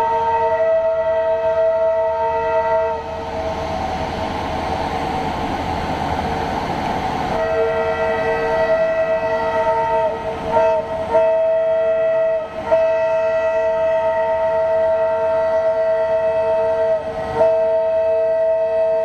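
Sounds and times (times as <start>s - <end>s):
train horn two-tone blast: 0.0s - 3.2s, 7.4s - 19.0s.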